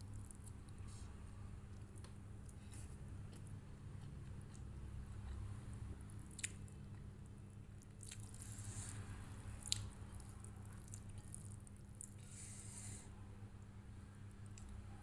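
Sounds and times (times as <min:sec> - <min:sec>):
wet chewing: 0:06.1 - 0:12.4.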